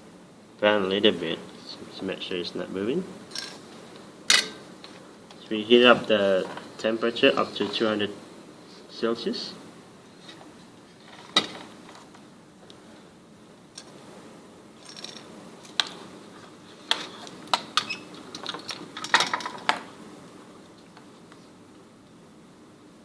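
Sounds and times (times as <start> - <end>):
tools clicking and clattering: 14.8 - 15.9, 17.8 - 19.8.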